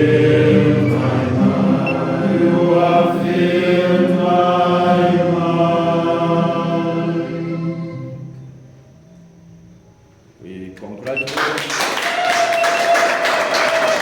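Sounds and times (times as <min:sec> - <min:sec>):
choir singing a hymn: 0:00.0 - 0:08.8.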